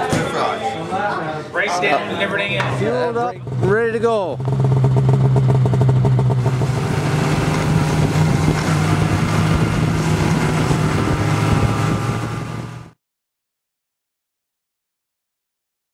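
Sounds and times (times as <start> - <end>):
snowmobile engine running: 2.8 - 13.0.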